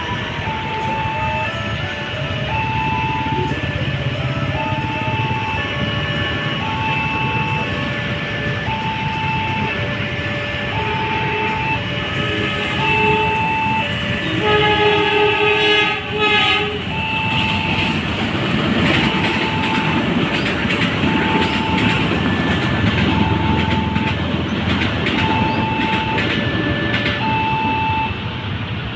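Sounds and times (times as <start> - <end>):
level crossing warning bell: 0.0 - 28.6
train rumble and wheel clatter: 0.0 - 28.9
train horn: 10.7 - 18.0.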